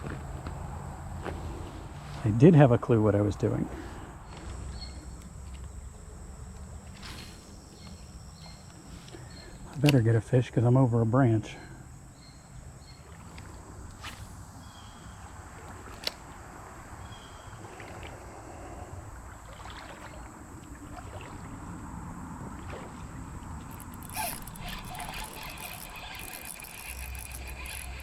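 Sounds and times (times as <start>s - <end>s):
road traffic rumble: 0.0s - 9.2s
river water trickling: 12.2s - 28.0s
quick ticks and splashy noise: 23.6s - 28.0s.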